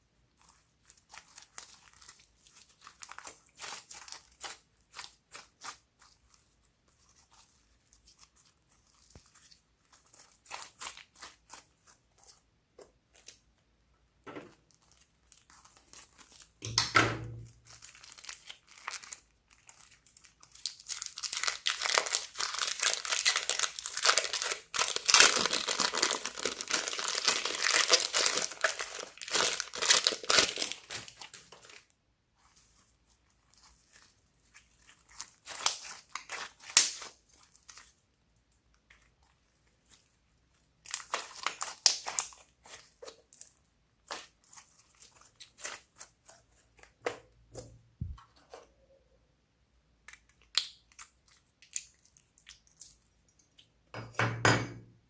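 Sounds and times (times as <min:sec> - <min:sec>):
slime crackling and popping: 0:14.6 - 0:31.8, 0:33.4 - 0:37.9, 0:40.8 - 0:46.9, 0:50.2 - 0:53.0.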